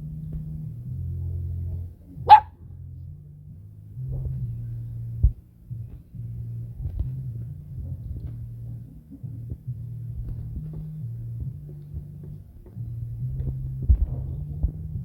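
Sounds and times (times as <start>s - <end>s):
low hum: 0.0s - 15.0s
dog barking: 2.3s - 2.5s
dull low thump: 3.5s - 15.0s.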